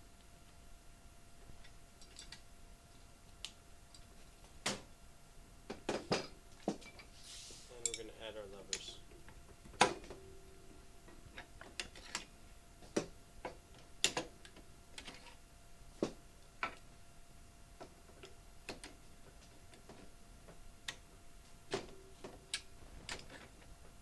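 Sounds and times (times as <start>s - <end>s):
hard parts clicking and clinking: 7.8s - 9.0s.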